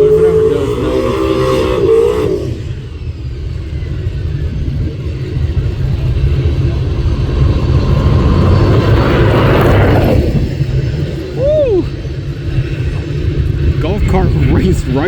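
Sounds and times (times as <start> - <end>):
freight train cars rumbling past: 0.0 - 15.0
rushing noise: 0.0 - 15.0.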